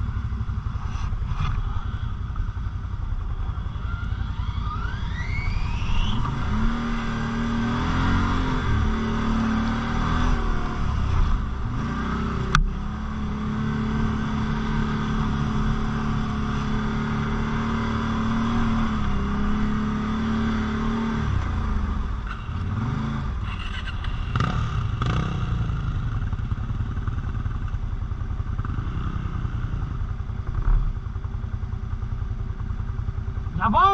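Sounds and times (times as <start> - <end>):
quad bike engine revving: 3.7 - 26.8, 28.5 - 29.8.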